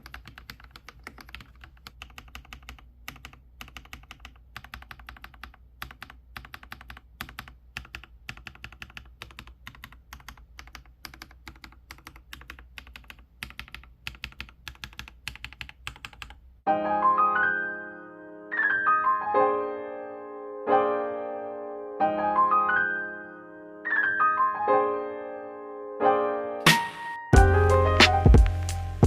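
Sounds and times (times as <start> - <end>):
piano music: 16.6 - 29.0.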